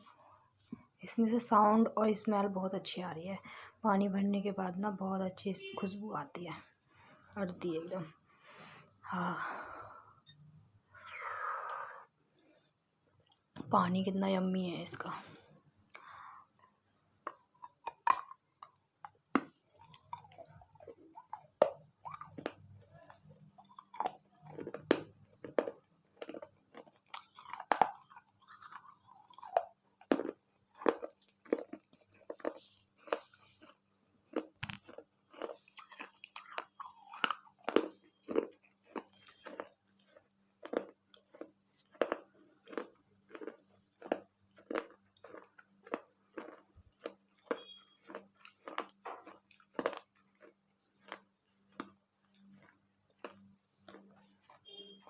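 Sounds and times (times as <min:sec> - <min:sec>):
chewing and crunching clay: 0:14.4 - 0:55.0.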